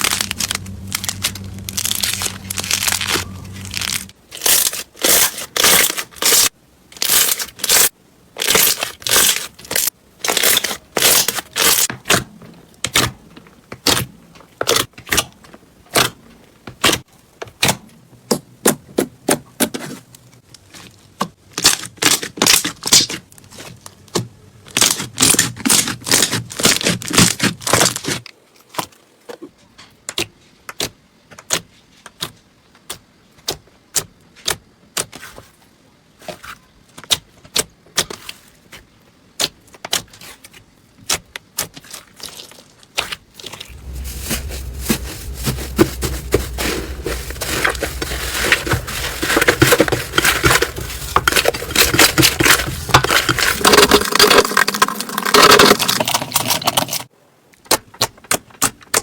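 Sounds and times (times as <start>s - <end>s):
low hum: 0.0s - 4.1s, 43.6s - 54.7s.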